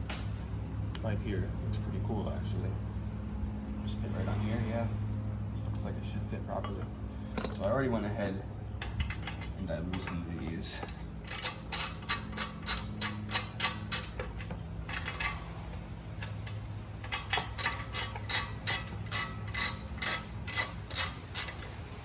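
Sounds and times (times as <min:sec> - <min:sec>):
socket ratchet clicking: 0:10.8 - 0:15.4, 0:16.2 - 0:21.9.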